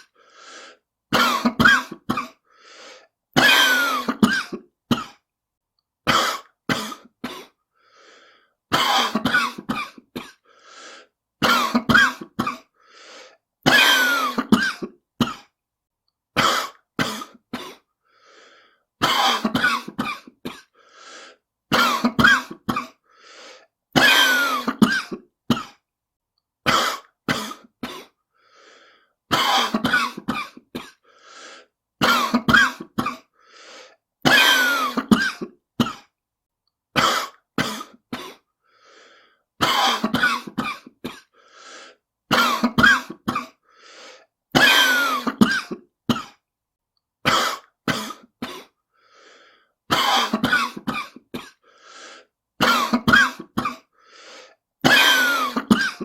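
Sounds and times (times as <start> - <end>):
faint in-breath: 0.0 - 0.9, 2.4 - 3.2, 7.6 - 8.6, 10.4 - 11.2, 12.7 - 13.4, 18.0 - 18.9, 20.7 - 21.5, 23.0 - 23.8, 28.3 - 29.2, 31.0 - 31.8, 33.3 - 34.0, 38.5 - 39.5, 41.3 - 42.1, 43.6 - 44.3, 48.7 - 49.8, 51.6 - 52.4, 53.9 - 54.6
person coughing: 1.1 - 2.5, 3.3 - 5.3, 6.0 - 7.6, 8.7 - 10.5, 11.4 - 12.8, 13.6 - 15.6, 16.4 - 17.9, 19.0 - 20.8, 21.7 - 23.1, 24.0 - 25.8, 26.6 - 28.2, 29.3 - 31.1, 32.0 - 33.4, 34.2 - 36.2, 36.9 - 38.5, 39.6 - 41.4, 42.3 - 43.7, 44.5 - 46.4, 47.2 - 48.8, 49.9 - 51.7, 52.6 - 54.0, 54.8 - 56.0.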